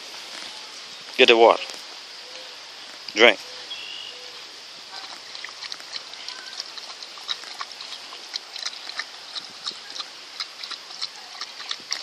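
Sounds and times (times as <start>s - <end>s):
dog lapping water: 4.9s - 12.0s.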